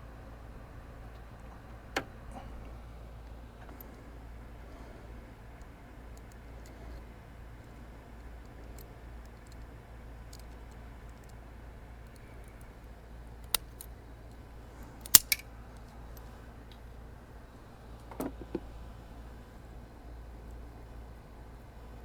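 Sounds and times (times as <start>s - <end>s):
steady low hum: 0.0s - 22.0s
cutters snipping clicks: 15.1s - 15.4s.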